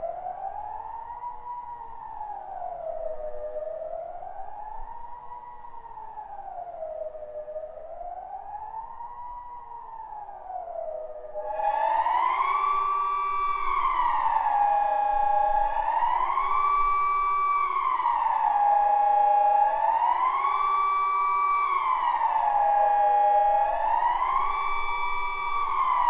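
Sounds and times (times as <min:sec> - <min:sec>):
brighter siren tone: 0:11.4 - 0:26.0
siren wailing: 0:11.4 - 0:26.0.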